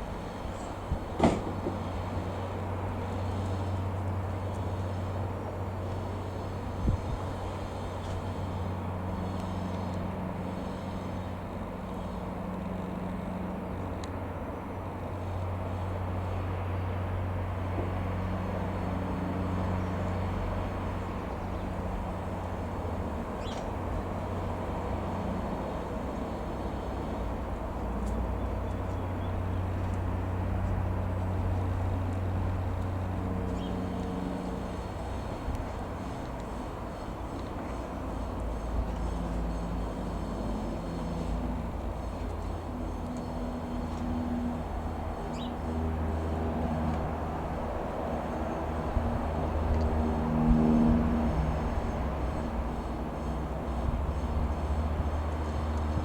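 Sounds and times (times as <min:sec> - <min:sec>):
aircraft piston engine humming: 0:00.0 - 0:56.0
brief knock: 0:01.2 - 0:01.8.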